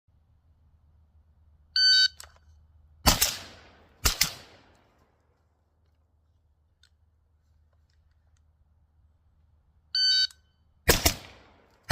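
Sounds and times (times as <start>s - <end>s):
short electronic beep: 1.8s - 2.2s, 10.0s - 10.6s
rifle shots: 3.0s - 4.8s, 10.9s - 11.9s.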